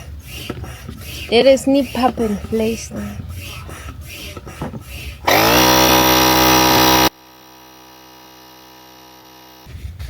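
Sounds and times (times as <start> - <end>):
small electric motor whirring: 5.2 - 9.7.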